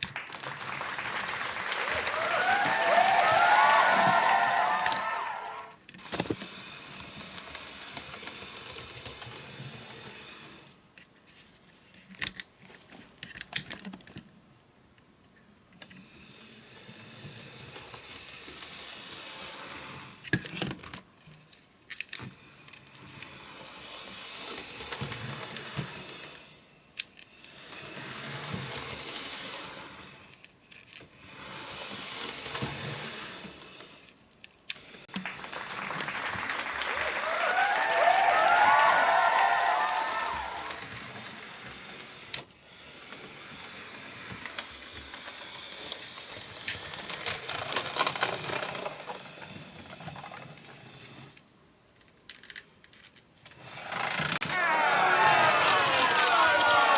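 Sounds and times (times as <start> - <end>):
model train motor whirring: 5.9 - 10.7, 22.7 - 34.2, 39.5 - 51.4, 53.5 - 54.4.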